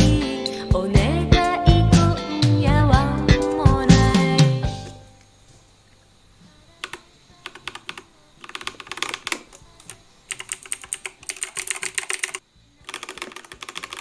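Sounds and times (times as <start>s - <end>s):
mechanical keyboard typing: 6.8s - 14.0s.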